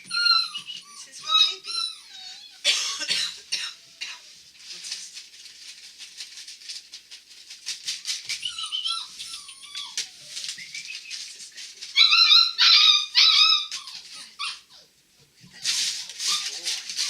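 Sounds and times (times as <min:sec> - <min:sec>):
puppies whining: 0:00.0 - 0:02.7, 0:08.2 - 0:15.0
light clicking and rustling: 0:04.5 - 0:12.0.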